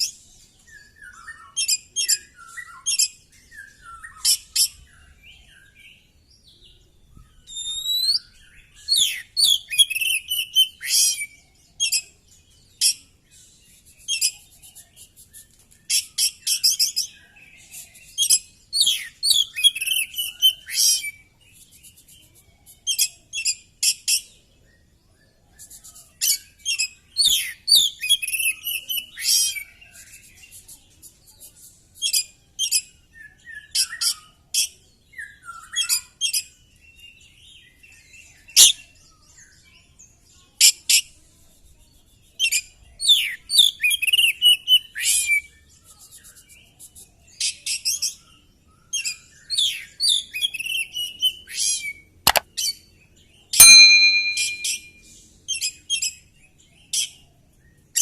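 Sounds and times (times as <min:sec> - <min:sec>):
songbird whistling and chattering: 0:07.4 - 0:12.1, 0:49.0 - 0:52.1.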